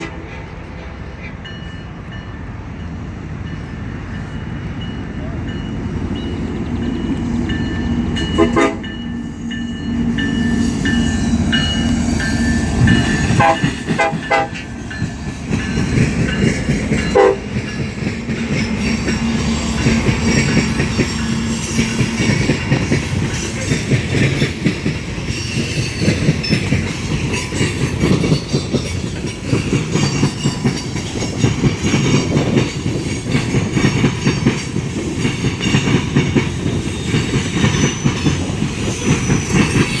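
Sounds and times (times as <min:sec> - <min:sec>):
train horn: 0:00.0 - 0:01.1, 0:08.4 - 0:09.0, 0:12.8 - 0:14.7, 0:17.1 - 0:17.6
train wheels clattering on rails: 0:03.4 - 0:40.0.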